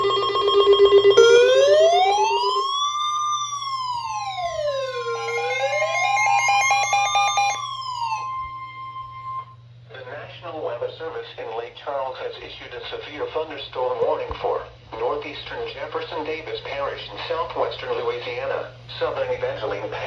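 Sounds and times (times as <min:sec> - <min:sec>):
rapid beeping tones: 0:00.0 - 0:09.5
electronic siren wailing: 0:00.0 - 0:09.6
steady alert tone: 0:00.0 - 0:09.6.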